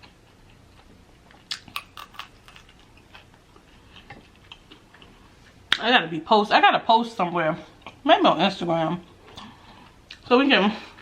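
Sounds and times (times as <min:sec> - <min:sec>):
chewing with wet mouth clicks: 0:00.0 - 0:05.8.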